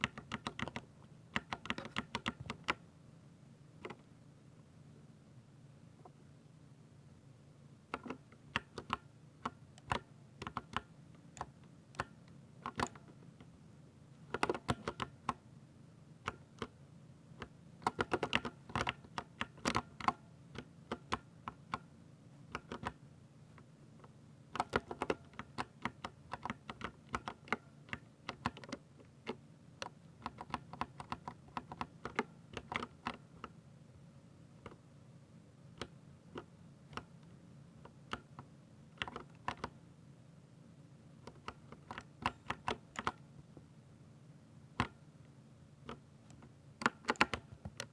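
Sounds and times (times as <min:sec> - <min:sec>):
mechanical keyboard typing: 0:00.0 - 0:02.8, 0:08.0 - 0:13.0, 0:14.3 - 0:15.4, 0:17.8 - 0:21.8, 0:22.5 - 0:23.0, 0:24.6 - 0:33.6, 0:39.0 - 0:39.8, 0:41.2 - 0:43.2, 0:45.9 - 0:47.9.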